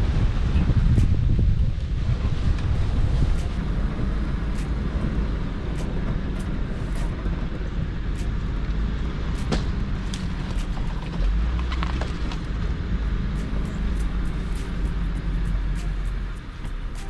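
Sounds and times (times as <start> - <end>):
engine and tyre rumble: 0.0 - 17.0.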